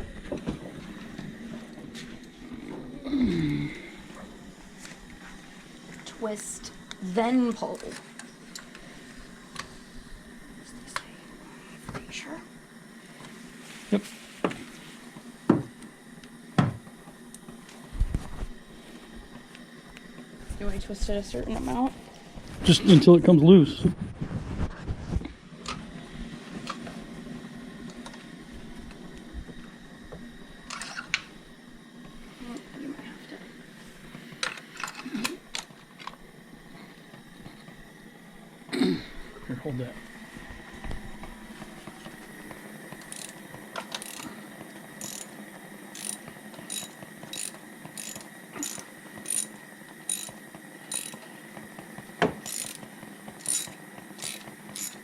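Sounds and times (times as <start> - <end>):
faint steady hum: 0.0 - 55.0
socket wrench clicking: 43.0 - 44.2, 45.0 - 45.3, 46.0 - 49.5, 50.1 - 51.3, 52.4 - 52.8, 53.4 - 55.0.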